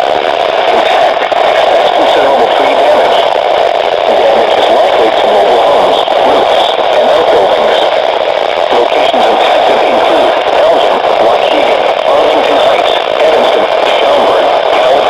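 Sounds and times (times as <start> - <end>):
faint garbled radio voice: 0.0 - 15.0
radio static hiss: 0.0 - 15.0.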